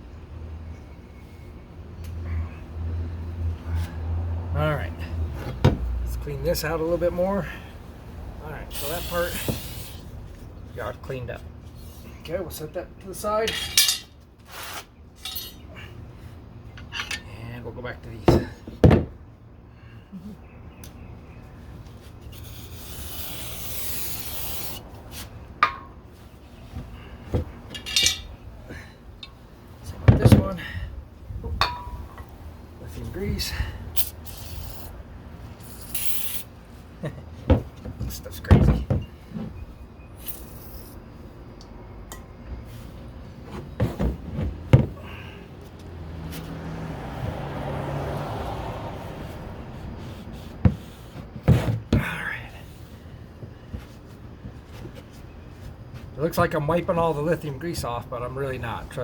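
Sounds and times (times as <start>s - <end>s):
hand rubbing metal hardware: 13.4s - 15.6s, 27.6s - 28.4s.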